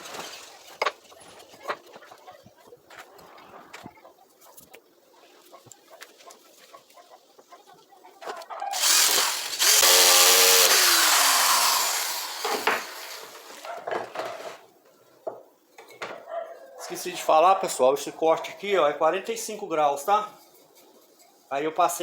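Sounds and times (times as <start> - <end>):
electric saw running: 8.7 - 13.7.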